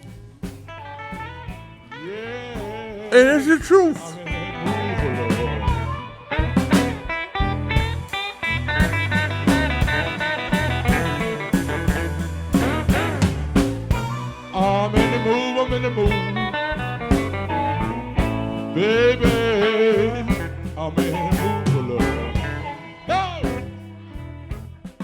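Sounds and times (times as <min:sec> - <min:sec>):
blues music with guitar: 0:00.0 - 0:25.0.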